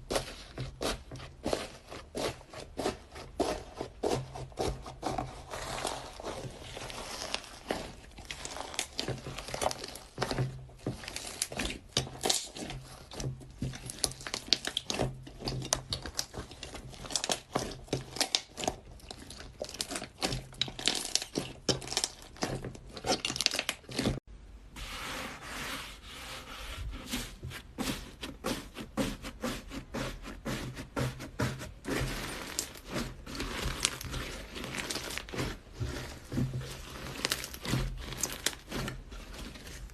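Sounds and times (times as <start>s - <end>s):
slime crackling and popping: 5.6s - 24.2s, 32.0s - 39.6s.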